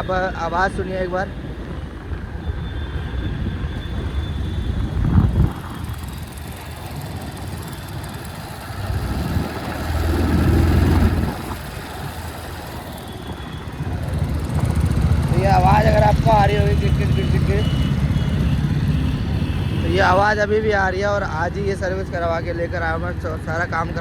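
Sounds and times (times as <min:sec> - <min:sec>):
motorcycle engine running: 0:04.4 - 0:20.1.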